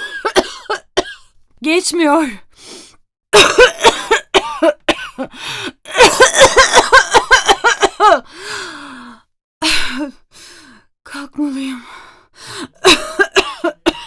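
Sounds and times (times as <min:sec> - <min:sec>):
woman coughing: 0:00.0 - 0:01.3, 0:03.4 - 0:05.3, 0:05.9 - 0:08.2, 0:12.8 - 0:14.0
voiced breath out: 0:08.3 - 0:09.3.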